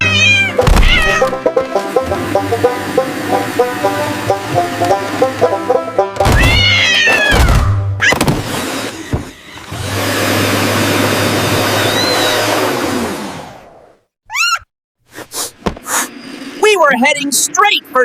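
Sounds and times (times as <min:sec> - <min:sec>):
short falling meow: 0:00.0 - 0:01.2, 0:06.3 - 0:07.6
cartoon cat yowling: 0:00.0 - 0:01.3, 0:06.3 - 0:08.2, 0:14.3 - 0:14.7
robot vacuum motor drone: 0:00.9 - 0:05.7, 0:08.4 - 0:13.9
background music: 0:01.0 - 0:06.9.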